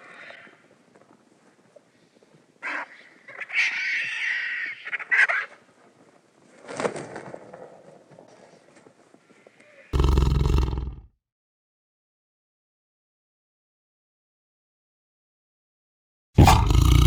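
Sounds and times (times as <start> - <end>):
animal calls: 2.6 - 5.7, 16.4 - 17.0.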